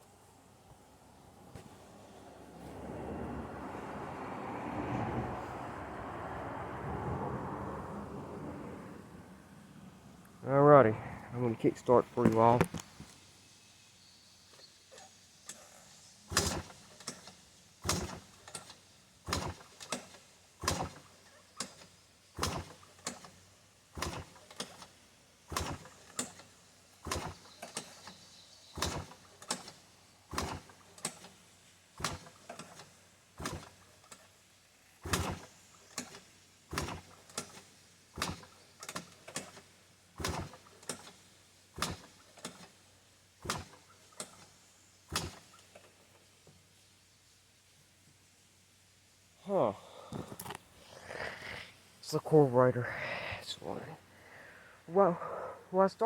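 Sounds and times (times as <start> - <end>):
engine being kickstarted: 11.0 - 13.1, 14.9 - 46.4.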